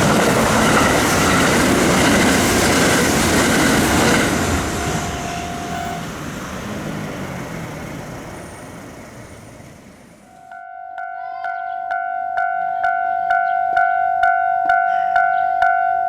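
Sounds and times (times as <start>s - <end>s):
train passing: 0.0s - 10.7s.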